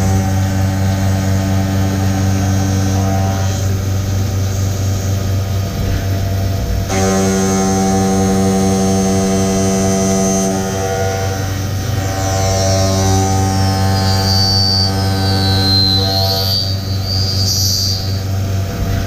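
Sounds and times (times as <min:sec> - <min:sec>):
milling machine drone: 0:00.0 - 0:19.0.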